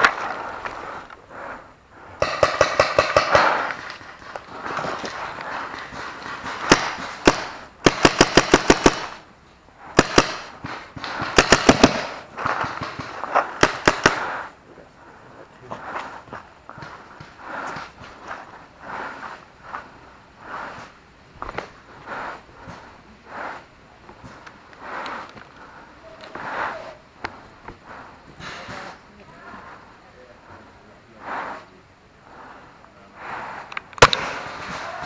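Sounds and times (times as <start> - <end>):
paintball markers firing: 2.2 - 9.2, 10.0 - 14.5, 34.0 - 35.0.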